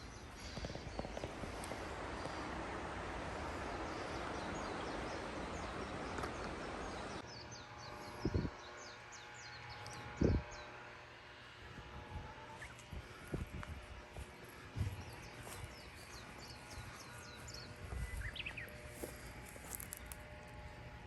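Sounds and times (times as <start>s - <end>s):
steady rushing noise: 0.0s - 7.2s
small birds chirping: 0.0s - 10.9s, 12.0s - 20.7s.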